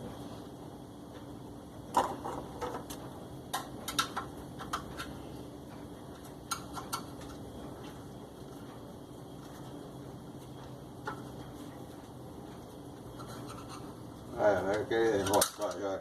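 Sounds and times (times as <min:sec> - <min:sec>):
clicks and knocks of machine parts: 0:02.0 - 0:05.2, 0:15.2 - 0:15.9.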